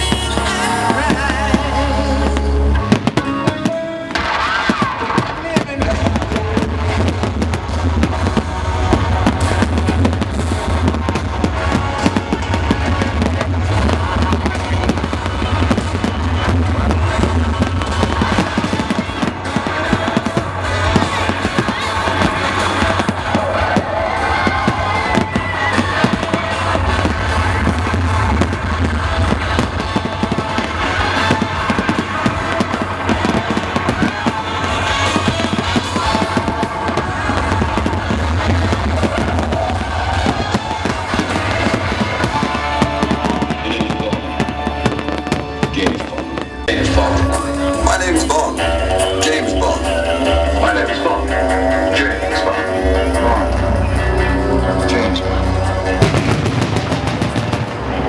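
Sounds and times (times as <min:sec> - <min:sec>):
fireworks bangs and crackles: 0:00.0 - 0:58.0
loud music with deep bass: 0:00.0 - 0:58.0.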